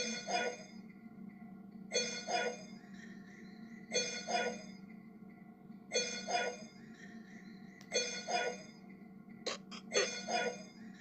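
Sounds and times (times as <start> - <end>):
steady low drone: 9.5 - 10.3
processed cough with ringing tone: 9.5 - 10.7.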